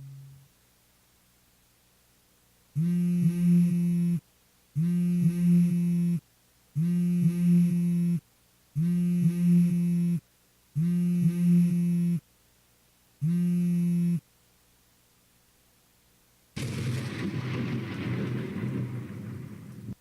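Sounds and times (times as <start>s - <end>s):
low buzzing tone: 0.0s - 0.6s, 2.7s - 12.3s, 13.2s - 14.3s.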